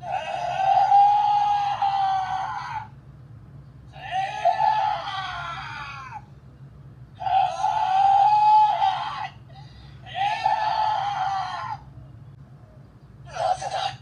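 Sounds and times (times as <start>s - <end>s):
recorded character voice screaming: 0.0s - 2.9s, 3.9s - 6.2s, 7.2s - 9.4s, 10.1s - 11.8s, 13.3s - 14.0s.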